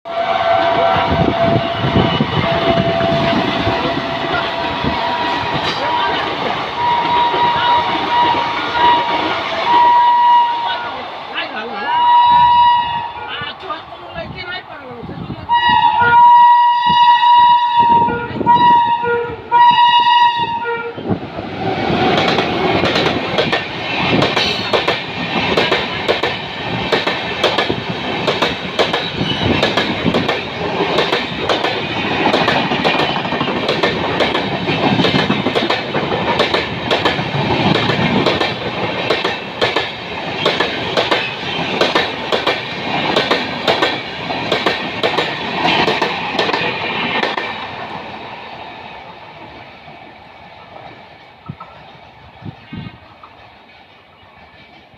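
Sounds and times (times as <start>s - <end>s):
locomotive horn blasts: 0.1s - 10.8s, 11.9s - 13.3s, 15.5s - 21.1s
train wheels clattering over rail joints: 21.9s - 47.8s.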